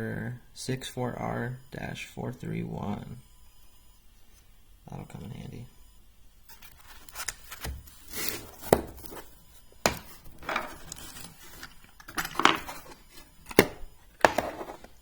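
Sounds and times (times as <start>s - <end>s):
rustling and scraping: 6.5s - 15.0s.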